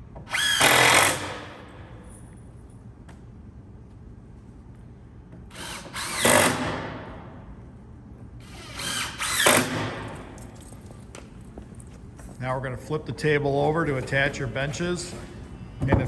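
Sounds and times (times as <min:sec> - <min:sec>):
power drill driving screws into wood: 0:00.3 - 0:01.6, 0:05.5 - 0:07.0, 0:08.4 - 0:10.3.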